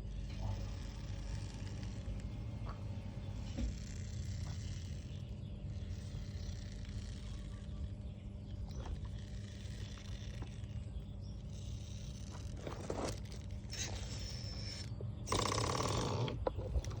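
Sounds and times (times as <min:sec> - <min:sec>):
electric motor hum: 0:00.0 - 0:17.0
scraping and light knocks: 0:11.6 - 0:15.0.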